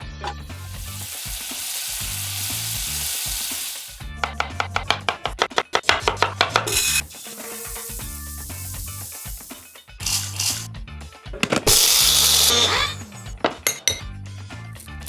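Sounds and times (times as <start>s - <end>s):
food sizzling in oil: 0.4s - 4.1s, 6.7s - 10.7s, 11.7s - 13.1s.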